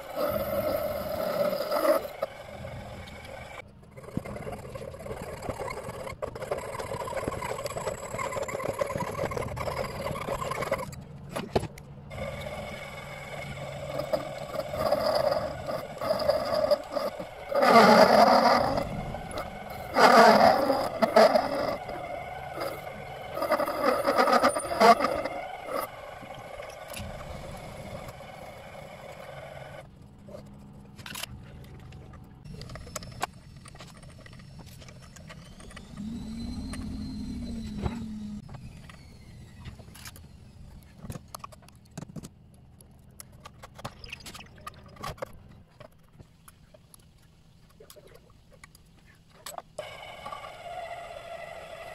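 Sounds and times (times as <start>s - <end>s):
tool scraping: 0.0s - 31.6s.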